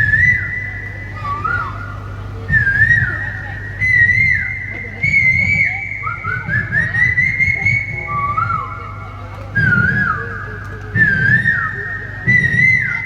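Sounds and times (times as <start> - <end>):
man whistling bird call: 9.6 - 13.0.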